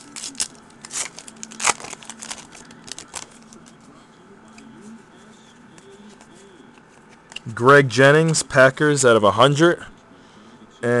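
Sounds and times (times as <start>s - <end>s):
foil wrapper crinkling and tearing: 0.0s - 3.8s.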